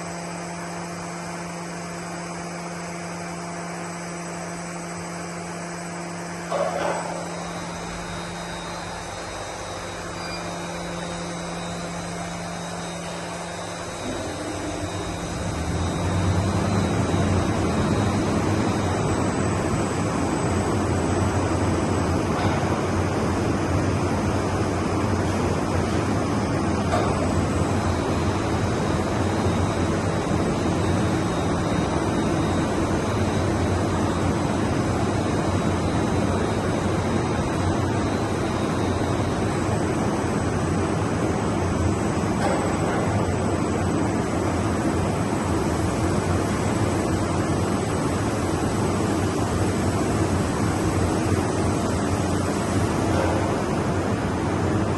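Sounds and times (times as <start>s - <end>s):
faint high whine: 0.0s - 41.7s
industrial machinery humming: 0.0s - 54.9s.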